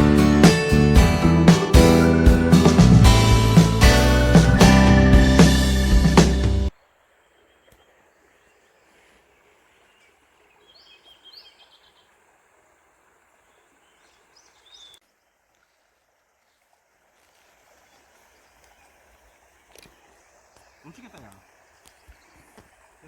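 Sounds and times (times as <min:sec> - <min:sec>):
faint bird chirps: 0:07.1 - 0:12.1, 0:13.4 - 0:15.4.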